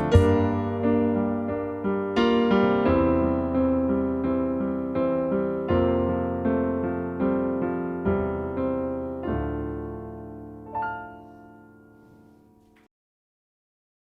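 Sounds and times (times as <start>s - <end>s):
high piano note: 0.0s - 1.5s
slow piano chords: 0.0s - 12.9s.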